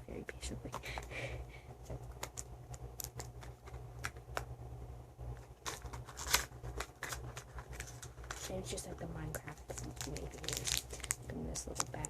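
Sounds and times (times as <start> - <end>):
steady low hum: 0.0 - 12.0
plastic packaging clicks and crinkles: 1.9 - 4.5, 5.4 - 12.0.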